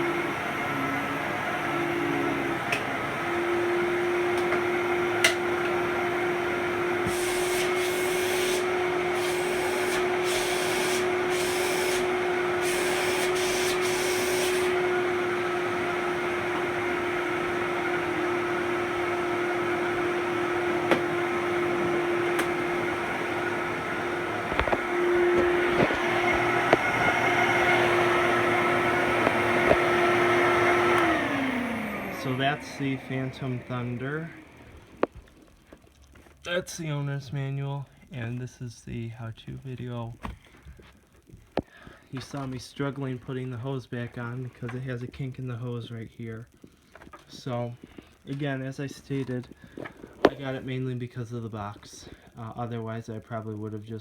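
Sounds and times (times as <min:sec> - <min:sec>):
vacuum cleaner motor whine: 0:00.0 - 0:35.8, 0:46.4 - 0:50.9.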